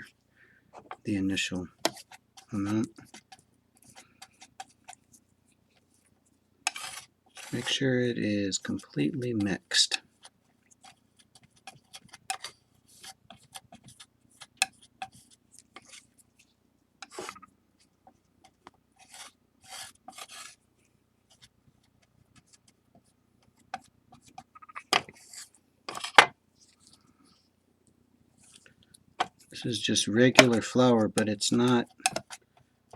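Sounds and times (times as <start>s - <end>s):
palette knife scraping on a tray: 1.8s - 5.0s, 6.7s - 7.9s, 8.5s - 16.1s, 17.0s - 17.4s, 19.0s - 20.6s, 23.8s - 26.8s.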